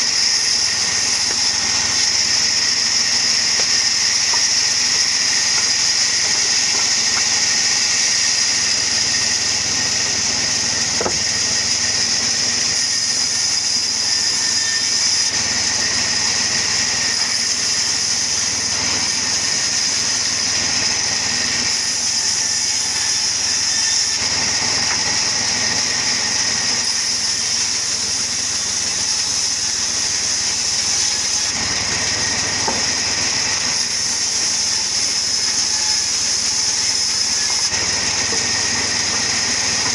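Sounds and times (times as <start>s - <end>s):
sawmill machine whining: 0.0s - 39.9s.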